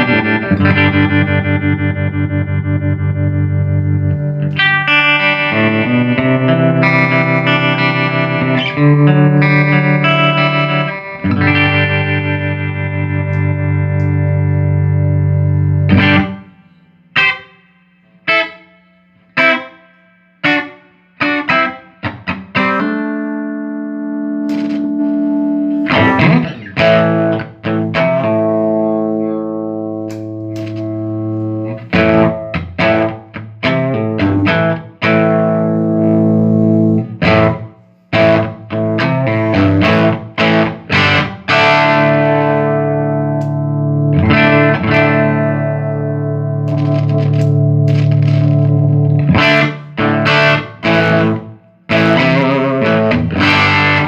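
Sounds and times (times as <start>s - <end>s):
electric guitar chords: 0.0s - 54.0s.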